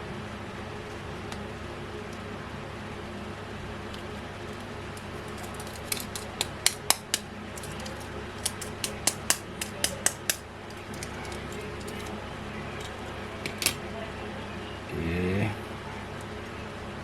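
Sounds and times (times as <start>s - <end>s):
steady low hum: 0.0s - 17.0s
toy car parts clicking: 3.9s - 12.2s, 12.8s - 13.8s.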